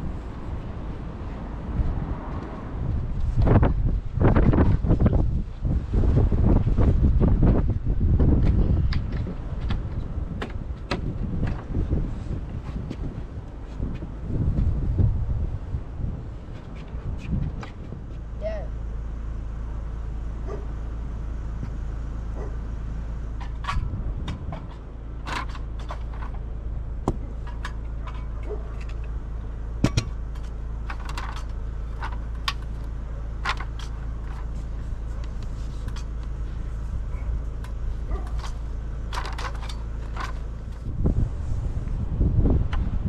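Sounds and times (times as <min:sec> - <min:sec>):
steady low rumble: 0:00.0 - 0:43.0
hardware clicking and knocking: 0:29.8 - 0:34.6, 0:37.6 - 0:40.8.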